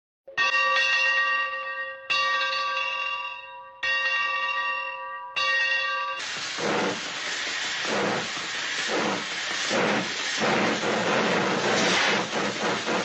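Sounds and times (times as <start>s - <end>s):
loud hiss: 6.2s - 13.0s.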